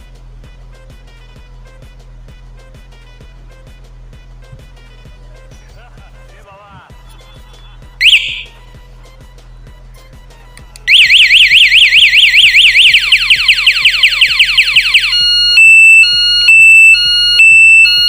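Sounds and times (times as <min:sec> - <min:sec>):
vehicle alarm siren: 0:08.0 - 0:08.6, 0:10.9 - 0:18.0.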